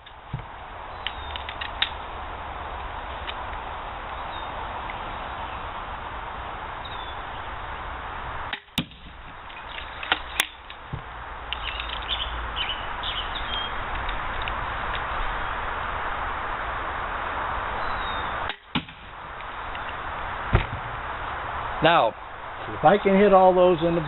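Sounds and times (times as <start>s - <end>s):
steady hiss: 0.0s - 24.0s.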